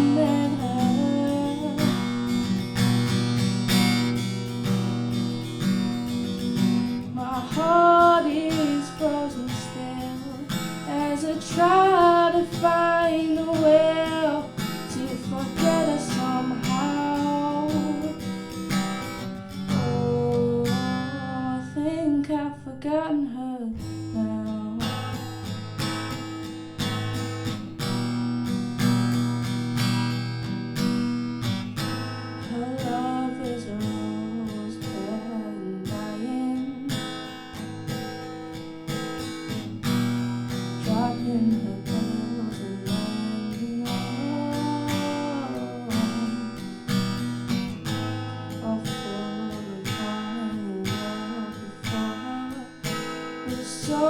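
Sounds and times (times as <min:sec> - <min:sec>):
person singing wordless melody: 0:00.0 - 0:02.3, 0:07.0 - 0:18.3, 0:19.7 - 0:24.9, 0:32.5 - 0:37.0, 0:40.8 - 0:46.7, 0:48.6 - 0:52.9, 0:53.5 - 0:54.0
acoustic guitar strummed and picked: 0:00.0 - 0:54.0.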